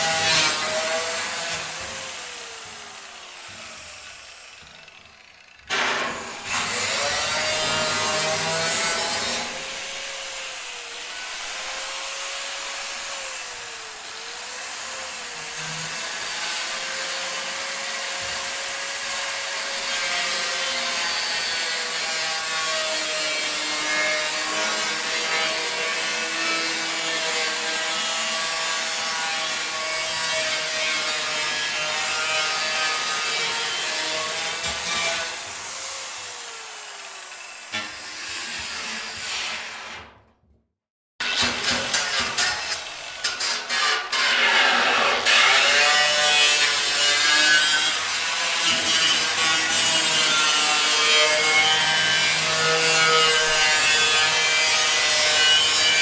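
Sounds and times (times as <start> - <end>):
angle grinder grinding metal: 0.0 - 39.9, 41.2 - 56.0.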